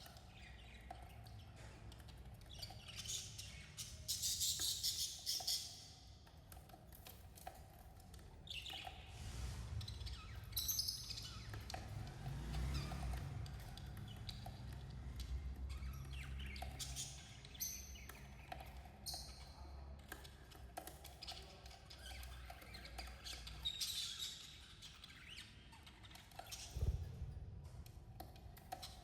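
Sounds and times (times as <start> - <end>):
small clicks and scratches: 0.0 - 9.2, 11.1 - 27.1
low thump: 26.8 - 27.9.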